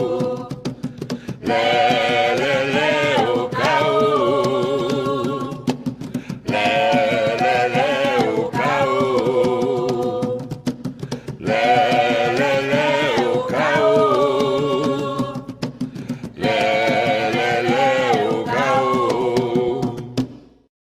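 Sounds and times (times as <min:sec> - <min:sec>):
voices singing held notes: 0:00.0 - 0:10.7, 0:11.3 - 0:20.3
hand drums in steady rhythm: 0:00.0 - 0:20.7.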